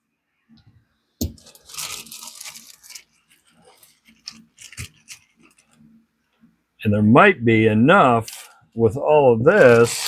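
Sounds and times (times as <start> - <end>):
packaging crinkling and rustling: 1.2 - 5.8, 8.2 - 8.6, 9.5 - 10.0.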